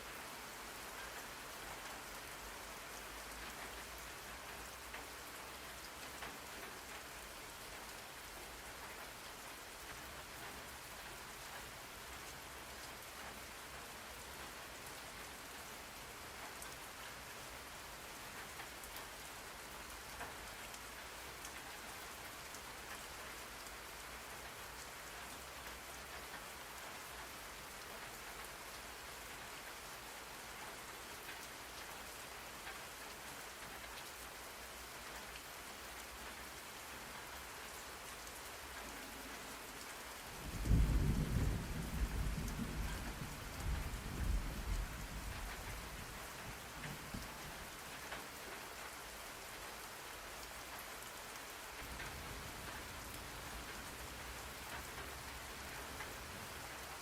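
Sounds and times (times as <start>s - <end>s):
steady rain: 0.0s - 57.0s
thunder rumbling: 40.5s - 46.1s.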